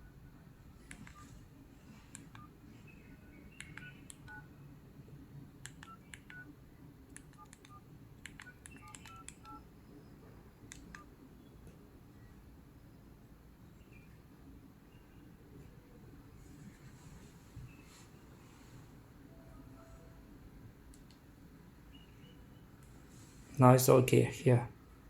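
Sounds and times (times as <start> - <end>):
phone keypad beeps: 2.3 - 4.5, 5.8 - 6.5, 7.3 - 9.6.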